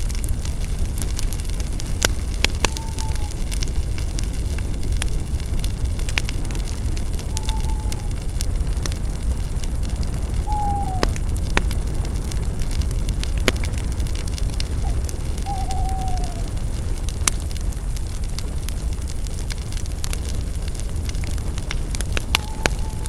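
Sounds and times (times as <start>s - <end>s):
campfire crackling and popping: 0.0s - 23.0s
low steady rumble: 0.0s - 23.0s
falling whistle-like tone: 10.5s - 11.1s, 15.5s - 16.5s.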